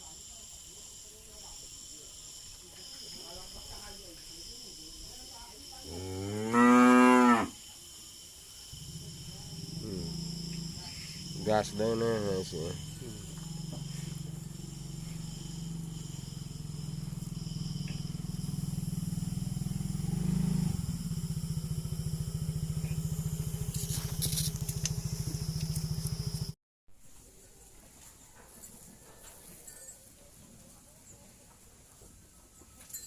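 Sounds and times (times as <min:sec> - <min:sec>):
small engine running: 0:07.7 - 0:26.6.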